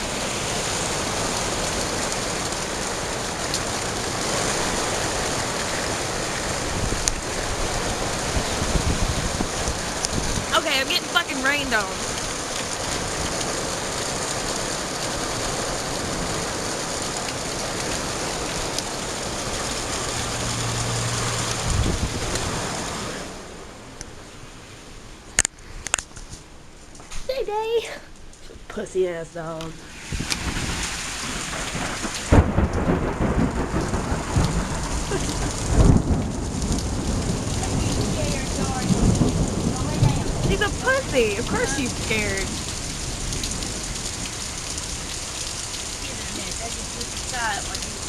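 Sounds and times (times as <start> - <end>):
heavy rain falling: 0.0 - 25.5, 27.3 - 48.0
thunder cracking and rumbling: 3.3 - 10.9, 30.1 - 45.0.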